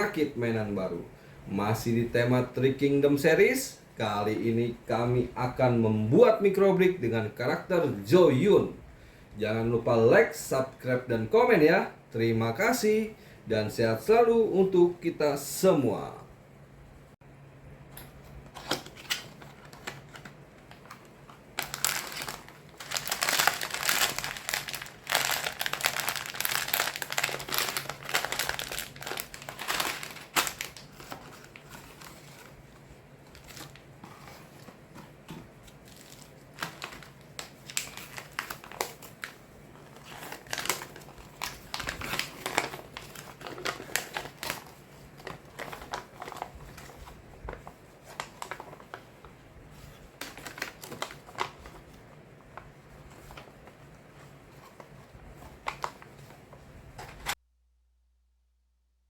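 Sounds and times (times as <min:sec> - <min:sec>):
plastic packaging crinkling: 0:18.5 - 0:57.4.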